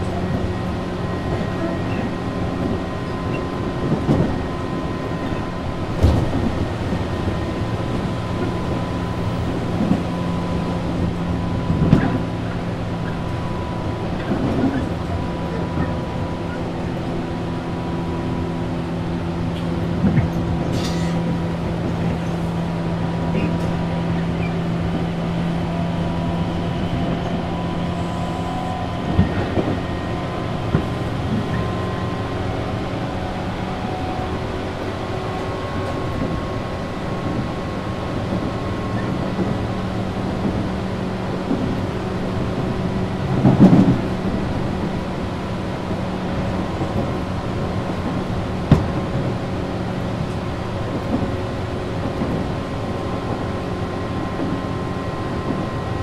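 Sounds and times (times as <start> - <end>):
train motor hum: 0.0 - 56.0
wheel-on-rail rumble: 0.0 - 56.0
clacks over rail joints: 11.7 - 13.4, 41.4 - 45.0.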